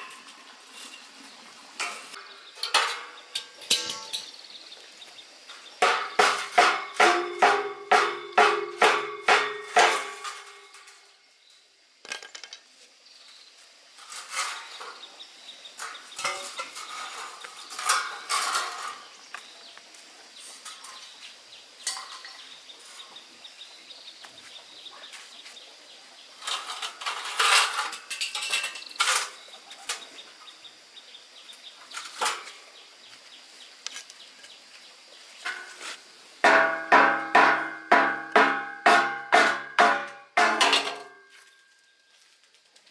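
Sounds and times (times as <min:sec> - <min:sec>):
metal clinks and knocks: 0:01.8 - 0:04.4, 0:35.5 - 0:41.5
hammer striking iron bar: 0:05.8 - 0:10.7, 0:36.4 - 0:41.3.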